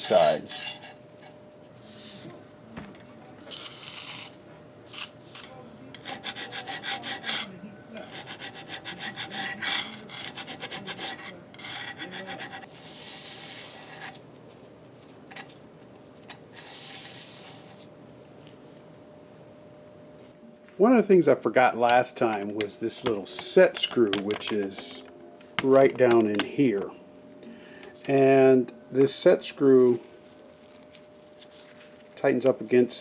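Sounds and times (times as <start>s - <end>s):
hand file rasping on metal: 5.0s - 14.0s.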